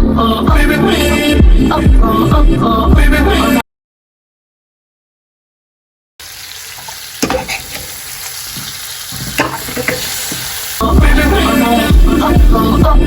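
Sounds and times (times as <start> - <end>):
music: 0.0 - 3.6, 9.4 - 13.0
chicken sizzling in oil: 6.2 - 13.0
spoon knocking and scraping pot: 6.7 - 11.3.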